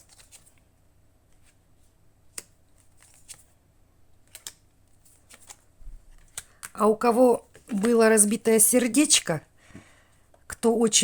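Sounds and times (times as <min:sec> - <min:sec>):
cards rustling: 0:00.0 - 0:00.6, 0:01.3 - 0:03.5, 0:04.2 - 0:08.5.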